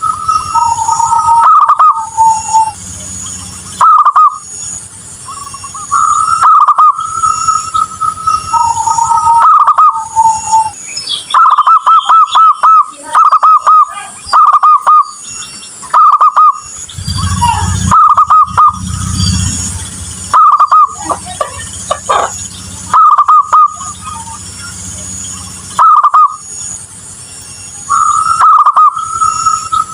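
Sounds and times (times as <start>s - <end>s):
doves cooing: 0.0s - 15.2s, 15.8s - 27.2s, 27.9s - 29.9s
high bird chirps: 0.0s - 29.9s
low rumble: 16.5s - 25.8s.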